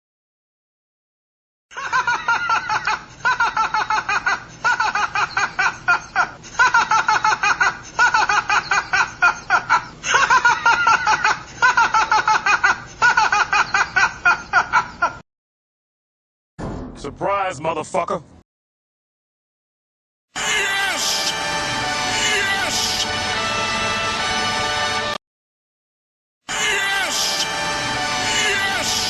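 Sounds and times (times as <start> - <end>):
person laughing hard: 1.7 - 15.2.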